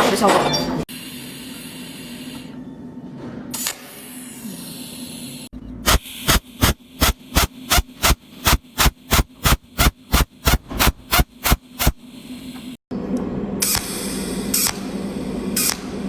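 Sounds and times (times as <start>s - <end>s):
machine hum: 5.9s - 12.0s
welding arc zaps: 5.9s - 12.0s.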